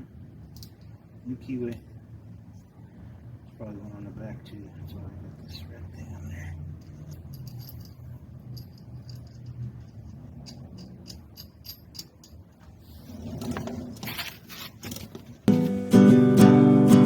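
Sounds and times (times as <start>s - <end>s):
rustling and clinks: 6.7s - 15.4s
small metal parts clicking: 6.8s - 12.8s.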